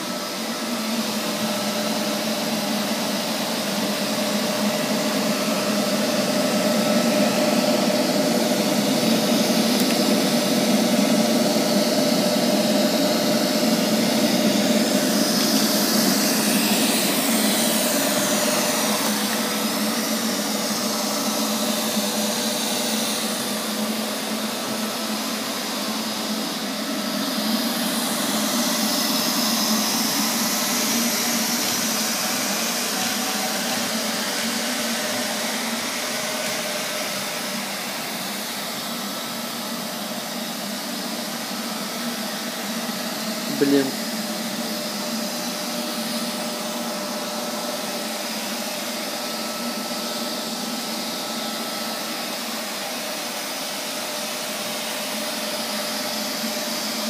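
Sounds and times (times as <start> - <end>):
robot vacuum cleaner whirring: 0.0 - 57.0.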